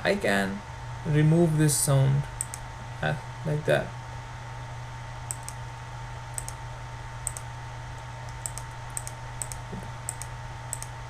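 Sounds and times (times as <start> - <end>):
steady low hum: 0.0 - 11.0
computer mouse clicking: 2.4 - 2.6, 5.3 - 5.6, 6.3 - 6.6, 7.2 - 11.0.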